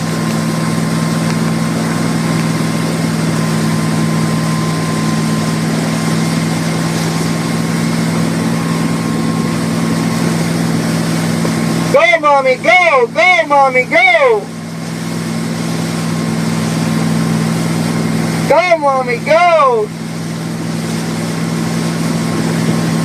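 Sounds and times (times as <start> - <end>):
motorboat engine droning: 0.0 - 23.0.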